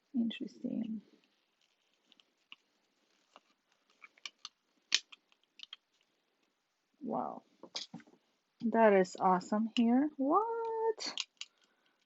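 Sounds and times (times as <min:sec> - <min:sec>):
package crinkling and clicking: 0:01.2 - 0:06.5, 0:10.6 - 0:12.0.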